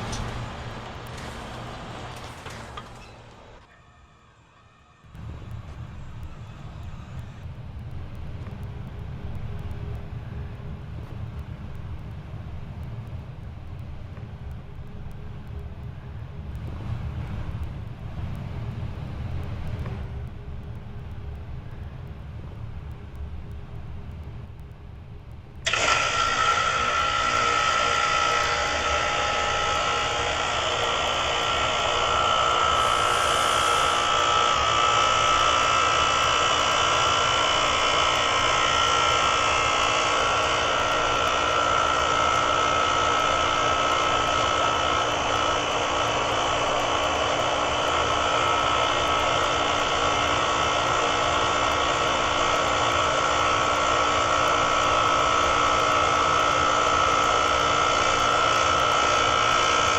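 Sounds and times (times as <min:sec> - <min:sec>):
loud rushing noise with high tone: 0:00.0 - 0:03.3, 0:25.7 - 0:59.9
heat pump low hum: 0:00.0 - 0:59.9.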